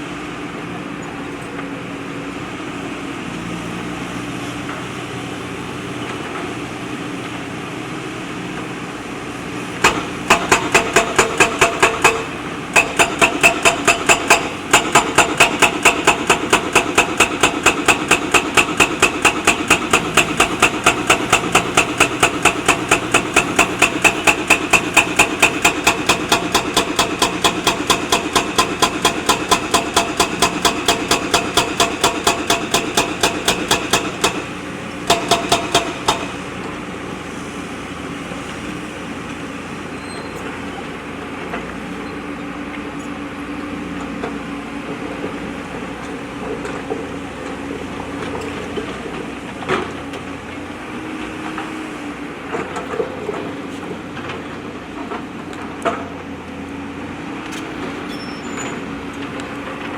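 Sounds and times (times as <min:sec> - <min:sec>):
diesel engine running: 0:00.0 - 0:59.9
rapid even knocking: 0:09.8 - 0:36.4.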